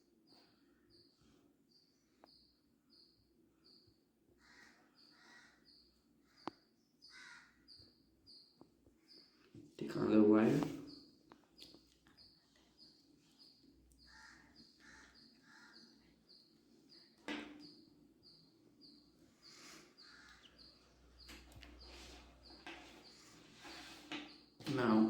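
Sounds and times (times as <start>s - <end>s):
faint birds calling: 0.0s - 25.0s.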